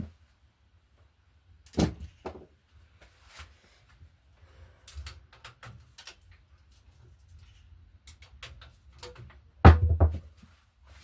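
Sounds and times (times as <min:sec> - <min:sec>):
knocks and clunks: 0:09.7 - 0:10.3.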